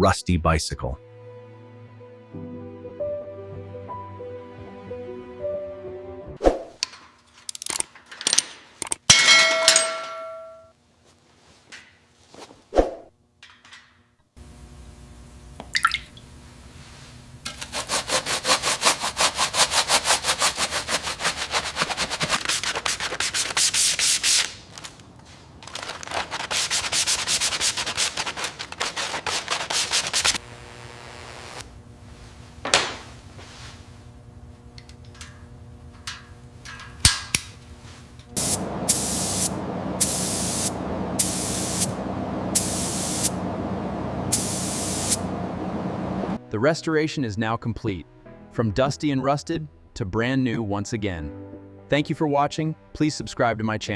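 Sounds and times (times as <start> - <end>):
sanding rust by hand: 17.5 - 24.6, 26.1 - 30.4
spray can hissing: 26.3 - 30.4, 38.4 - 43.4, 44.3 - 45.2.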